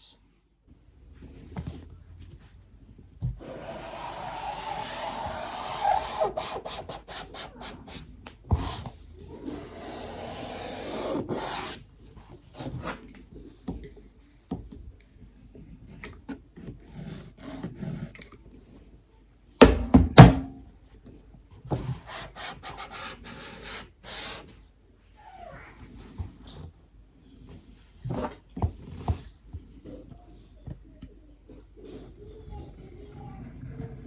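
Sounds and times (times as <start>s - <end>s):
rubbing and scraping on wood: 3.2s - 13.5s
loud knocks: 19.6s - 20.6s.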